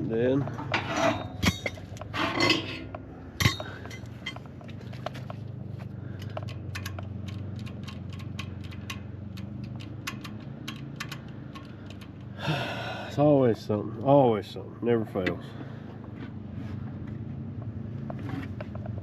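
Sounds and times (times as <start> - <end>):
metal tools clinking: 0.0 - 5.4
low hum: 0.0 - 14.0.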